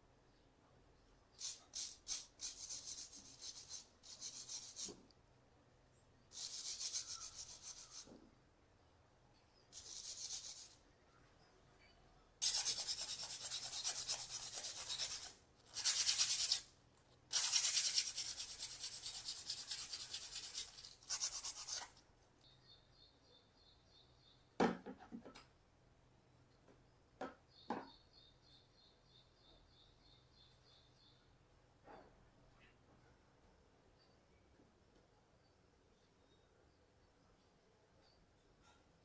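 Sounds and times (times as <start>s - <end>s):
faint high chirping: 5.9s - 16.6s, 17.5s - 24.6s, 26.5s - 39.0s
sanding strokes on rusty metal: 6.3s - 8.1s, 9.8s - 10.8s, 12.4s - 16.6s.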